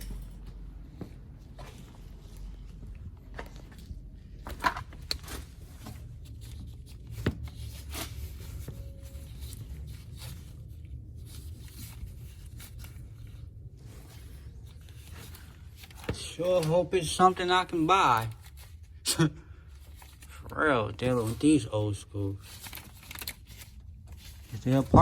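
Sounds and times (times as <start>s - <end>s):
low steady hum: 0.0s - 25.0s
clicks and scrapes of handling parts: 3.3s - 16.8s, 22.4s - 25.0s.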